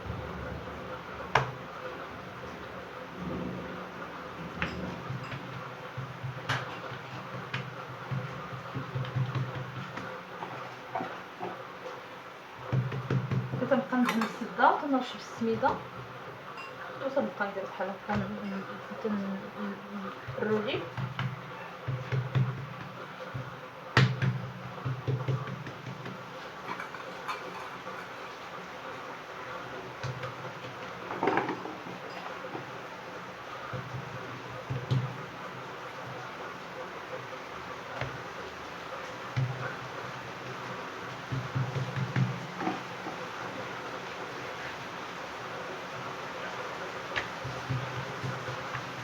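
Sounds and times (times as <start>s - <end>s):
low steady hum: 0.0s - 49.0s
dough slapping on work surface: 4.6s - 11.2s, 12.6s - 13.8s, 20.2s - 26.9s, 33.6s - 36.2s, 39.1s - 43.3s, 47.1s - 49.0s.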